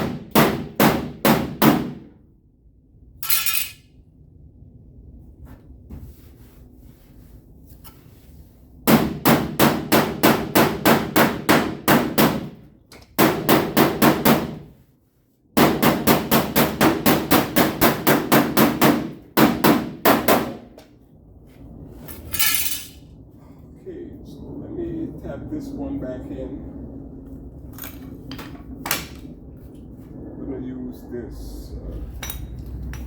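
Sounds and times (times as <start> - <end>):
hammer striking sheet steel: 0.0 - 2.0, 8.9 - 12.6, 15.6 - 20.7.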